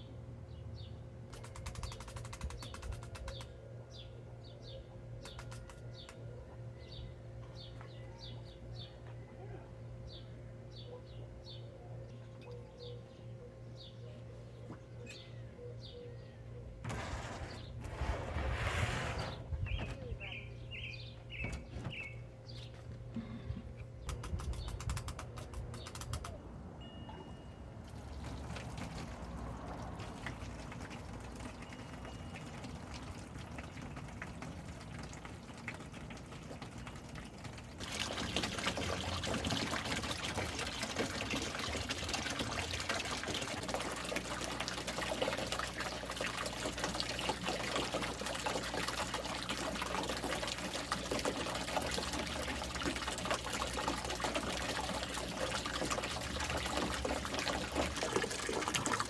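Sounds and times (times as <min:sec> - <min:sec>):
water pouring and trickling: 0:27.8 - 0:59.0.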